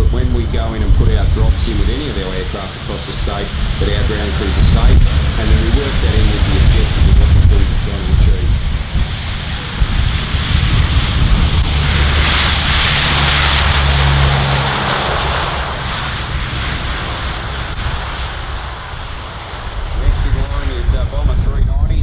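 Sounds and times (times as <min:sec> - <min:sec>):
aircraft engine drone: 0:00.0 - 0:22.0
wind buffeting microphone: 0:00.0 - 0:22.0.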